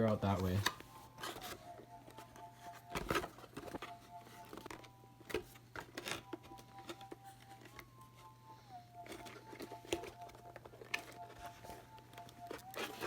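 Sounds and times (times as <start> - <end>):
faint steady tones: 0.0 - 13.0.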